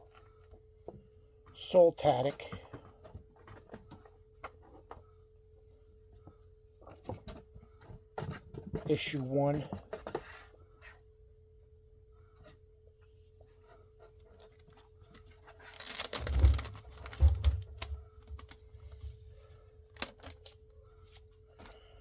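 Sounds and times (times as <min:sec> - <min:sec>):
plastic bags rustling: 0:15.6 - 0:21.2
books thumping down: 0:15.8 - 0:19.1.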